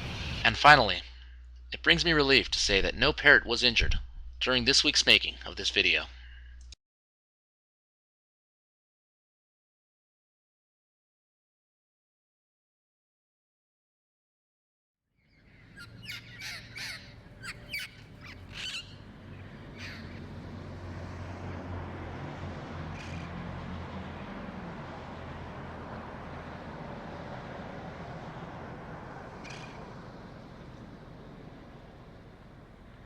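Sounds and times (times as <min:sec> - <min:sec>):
steady low rumble: 0:00.0 - 0:04.9, 0:24.0 - 0:33.0
harsh bird calls: 0:15.3 - 0:20.5, 0:29.4 - 0:29.9.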